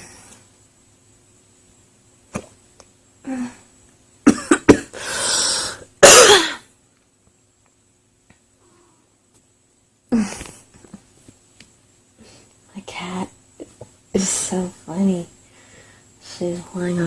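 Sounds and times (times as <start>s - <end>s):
woman coughing: 4.2s - 5.0s, 6.0s - 6.7s
woman hiccuping: 6.0s - 6.6s.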